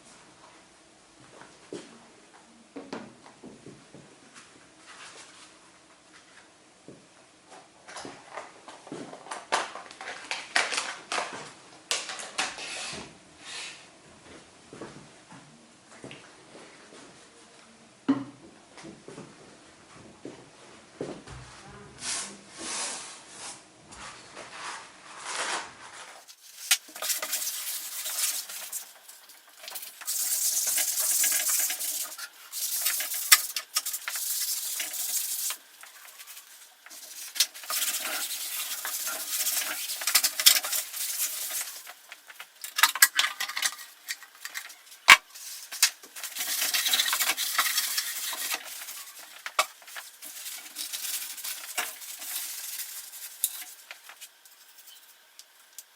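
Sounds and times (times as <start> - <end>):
brushing on a typewriter: 24.5 - 55.3.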